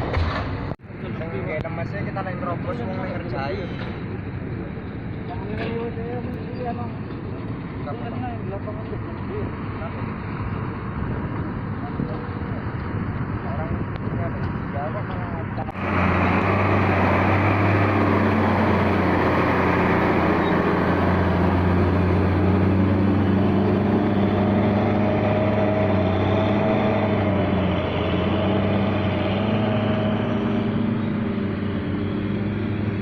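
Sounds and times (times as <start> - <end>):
excavator diesel engine running: 15.3 - 33.0.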